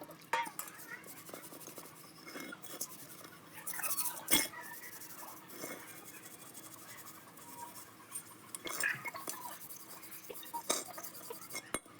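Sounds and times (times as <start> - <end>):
scraping strokes: 0.6 - 11.6.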